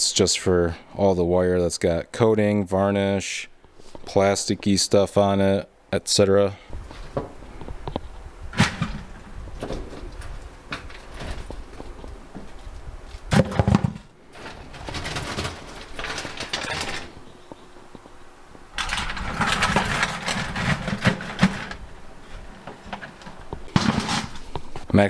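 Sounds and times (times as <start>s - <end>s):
scrap parts clattering in buckets: 6.7s - 7.8s, 8.4s - 12.1s, 13.2s - 17.3s, 18.8s - 24.9s.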